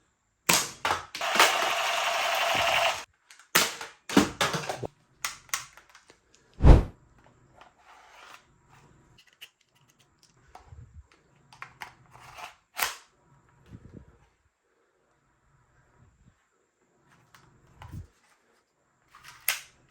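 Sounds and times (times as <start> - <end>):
toy pistol plastic clicks and snaps: 2.7 - 4.2, 5.2 - 6.4, 12.8 - 13.1, 19.3 - 19.8
loud low thump: 6.6 - 6.9.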